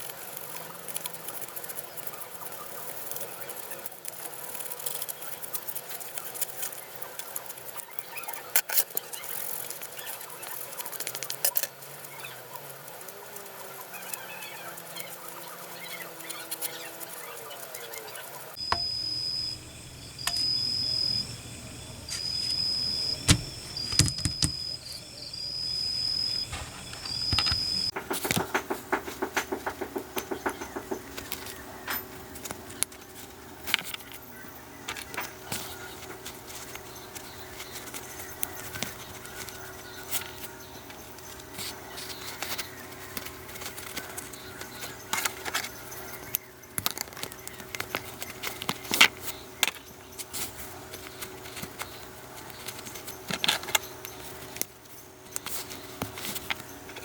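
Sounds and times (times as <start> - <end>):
clicks of small metal parts: 23.3 - 24.6.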